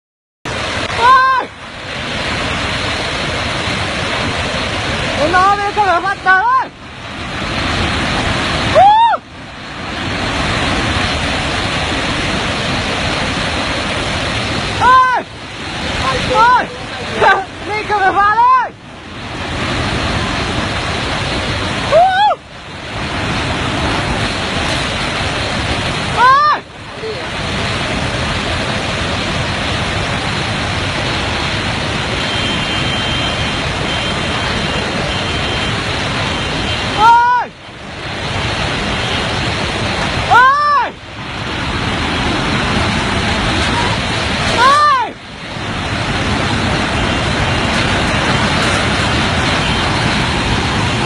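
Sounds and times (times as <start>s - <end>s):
floodwater rushing: 0.5s - 51.0s
person crying out: 1.0s - 1.6s, 8.7s - 9.2s, 21.9s - 22.4s, 26.2s - 27.2s, 40.3s - 41.0s, 44.6s - 45.2s.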